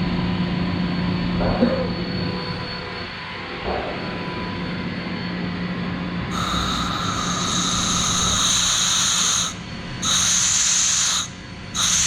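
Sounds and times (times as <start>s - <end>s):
air compressor humming: 6.2s - 12.0s
compressed air hissing: 6.3s - 12.0s.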